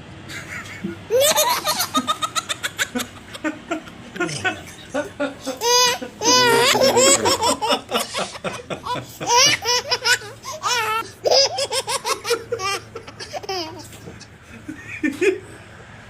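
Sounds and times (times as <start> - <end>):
high-pitched laughter: 0.3 - 15.4.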